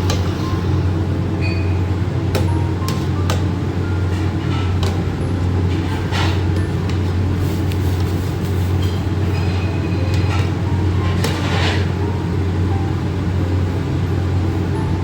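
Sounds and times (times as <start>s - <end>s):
low mechanical hum: 0.0s - 15.0s
utensils clinking and tapping: 2.3s - 12.0s.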